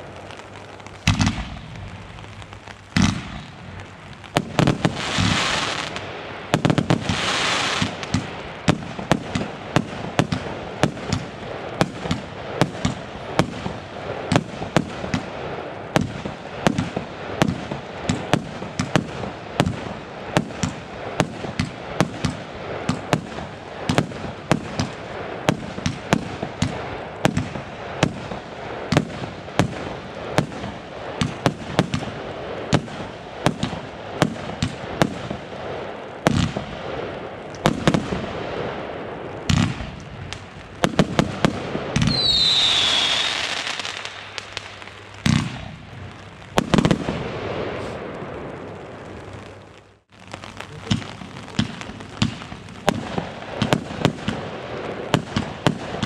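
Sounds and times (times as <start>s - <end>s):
fireworks banging: 0.0s - 56.0s
fireworks crackling: 0.0s - 56.0s
firework hiss and whistle: 4.5s - 9.2s, 40.9s - 54.4s.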